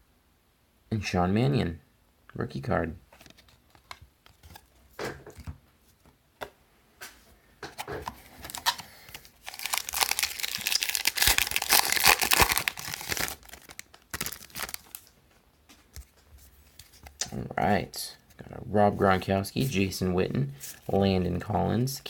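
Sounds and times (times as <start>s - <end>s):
wrapper tearing and crinkling: 8.4s - 15.2s.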